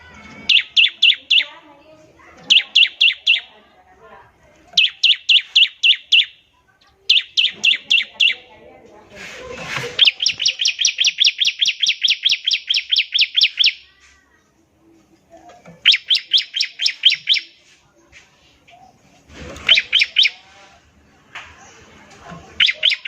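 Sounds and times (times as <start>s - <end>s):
bird rapid chirping rattle: 0.4s - 1.5s, 2.4s - 3.5s, 4.8s - 6.4s, 7.1s - 8.4s, 9.9s - 13.8s, 15.8s - 17.5s, 19.6s - 20.4s, 22.6s - 23.0s.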